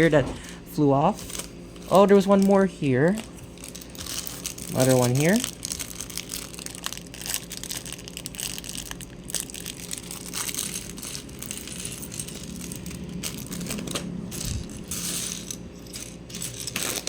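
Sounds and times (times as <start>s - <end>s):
plastic bags crinkling: 1.2s - 17.0s
plastic pieces clicking and rattling: 3.6s - 17.0s.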